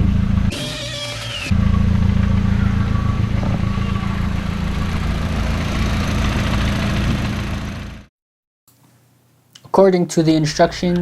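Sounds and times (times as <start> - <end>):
car engine idling: 1.3 - 8.1.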